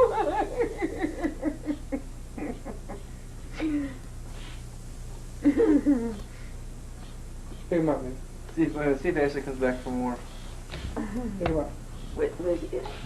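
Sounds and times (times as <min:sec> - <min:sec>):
people laughing: 0:00.0 - 0:04.0, 0:05.4 - 0:06.2.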